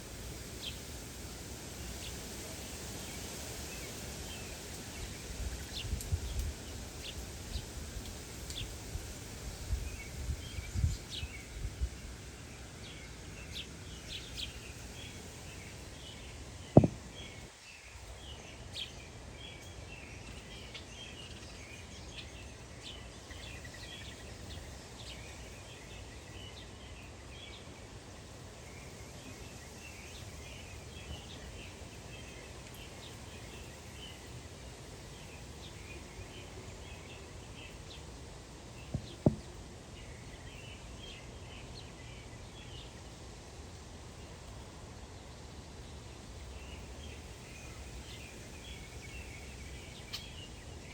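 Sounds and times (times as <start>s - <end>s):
songbirds chirping: 0.0s - 50.9s
sharp knock: 16.8s - 17.1s, 39.0s - 39.5s
low thumps: 16.8s - 17.2s, 38.9s - 39.5s.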